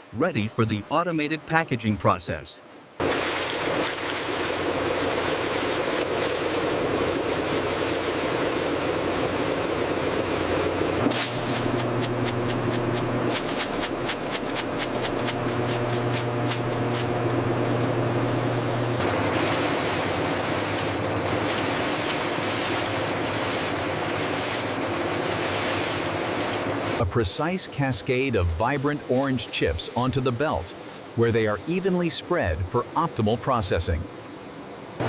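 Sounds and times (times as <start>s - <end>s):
low machine hum: 4.3s - 27.0s
chips rushing along conveyor: 11.1s - 27.0s.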